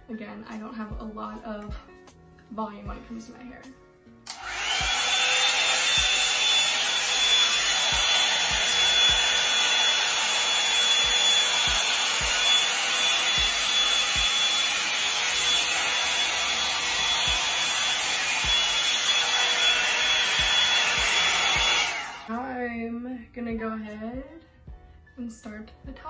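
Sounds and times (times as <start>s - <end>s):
hot-air brush dryer running: 4.3s - 22.4s.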